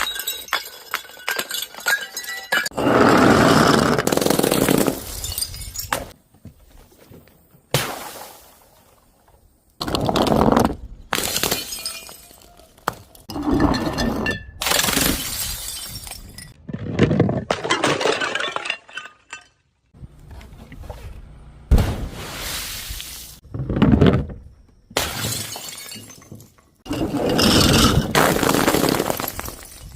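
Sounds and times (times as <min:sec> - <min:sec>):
glass bottles shattering: 0:00.0 - 0:02.8, 0:04.1 - 0:06.2, 0:11.1 - 0:16.6, 0:17.5 - 0:19.9, 0:25.0 - 0:29.9.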